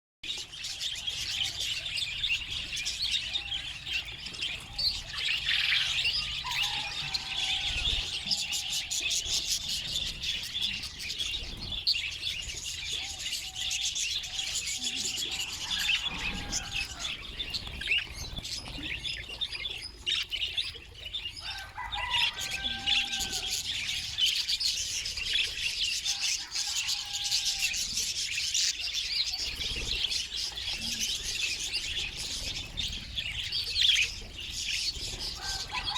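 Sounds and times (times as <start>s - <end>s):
budgerigars chattering and chirping: 0.3s - 35.9s.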